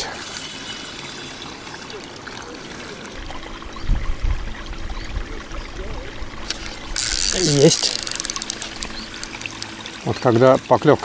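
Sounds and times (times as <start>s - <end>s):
river water trickling and lapping: 0.0s - 11.0s.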